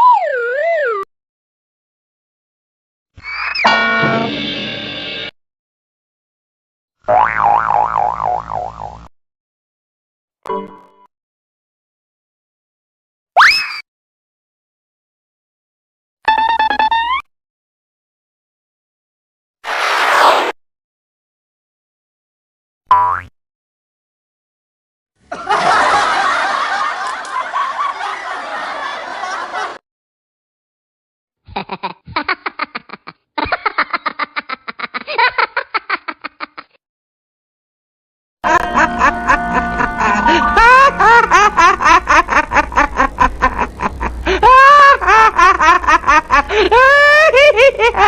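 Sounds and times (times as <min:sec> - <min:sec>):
people laughing: 0:25.3 - 0:29.8, 0:31.5 - 0:36.8, 0:38.5 - 0:48.0
steady musical tones: 0:38.5 - 0:44.3.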